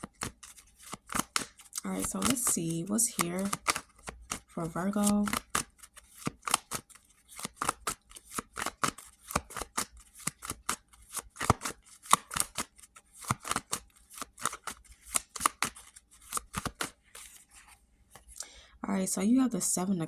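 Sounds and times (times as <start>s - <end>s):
cards being shuffled: 0.0s - 18.4s.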